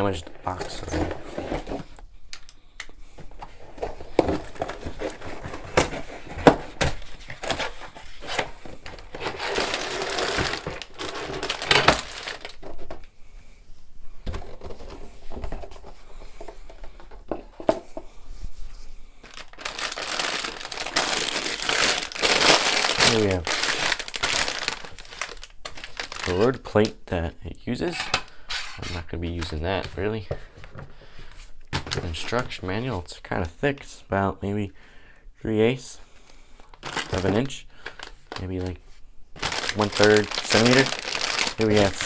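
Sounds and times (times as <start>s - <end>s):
cardboard packaging crinkling: 0.0s - 2.6s, 3.2s - 13.1s, 19.2s - 27.0s, 36.6s - 42.0s.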